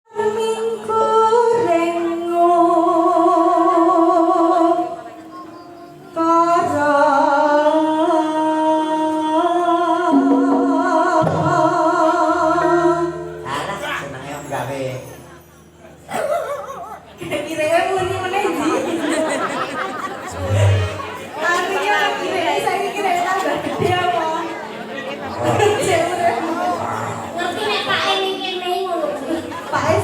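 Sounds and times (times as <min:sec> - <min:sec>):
person singing with vibrato: 0:00.1 - 0:14.0.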